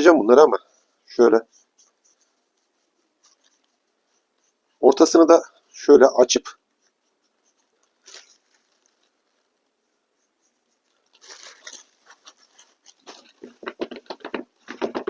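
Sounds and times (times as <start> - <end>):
wood shavings rustling by hand: 6.3 - 14.9
sharp crackles: 7.4 - 9.7, 10.7 - 14.8.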